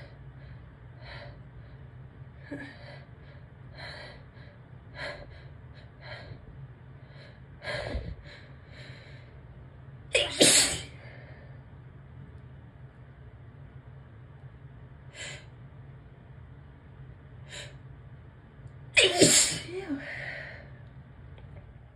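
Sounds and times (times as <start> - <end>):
person sneezing: 10.2 - 11.0, 19.0 - 19.8.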